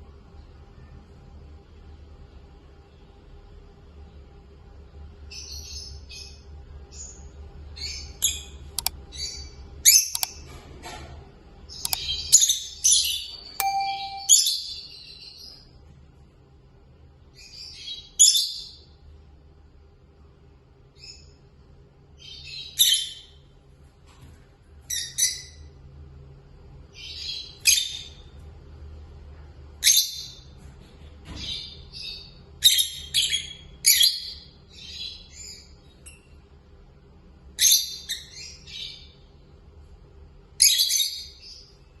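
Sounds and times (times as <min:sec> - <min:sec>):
lovebirds chirping and squawking: 0:22.2 - 0:23.4, 0:24.8 - 0:25.7, 0:31.3 - 0:36.4, 0:40.6 - 0:41.8.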